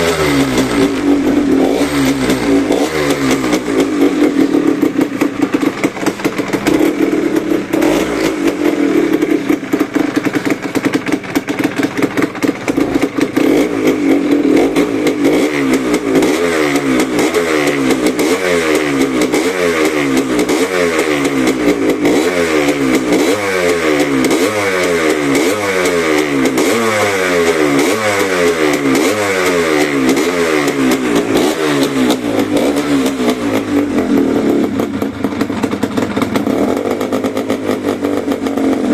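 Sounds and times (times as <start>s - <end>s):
two-stroke engine running: 0.0s - 38.9s.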